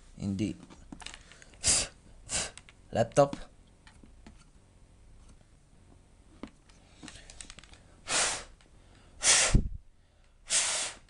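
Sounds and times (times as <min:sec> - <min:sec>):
breathy rush of air: 0:07.9 - 0:11.0.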